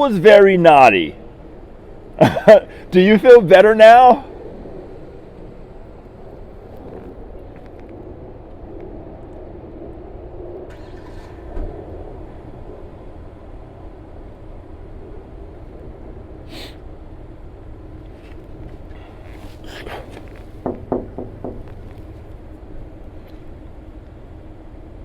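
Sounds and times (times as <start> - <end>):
low street rumble: 0.0 - 25.0
short hiss: 16.5 - 16.8.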